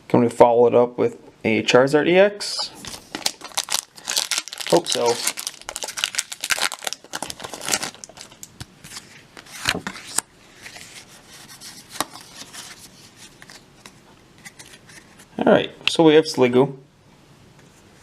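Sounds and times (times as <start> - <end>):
foil wrapper crinkling: 2.8 - 9.0.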